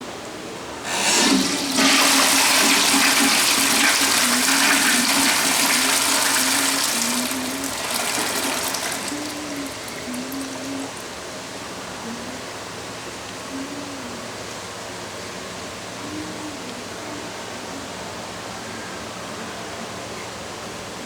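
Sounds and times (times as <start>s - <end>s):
toilet flushing: 0.8s - 11.2s.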